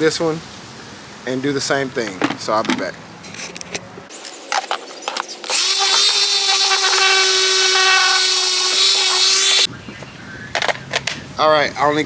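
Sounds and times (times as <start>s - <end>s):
light handling knocks: 2.0s - 2.9s
electric sander sanding wood: 5.5s - 9.7s.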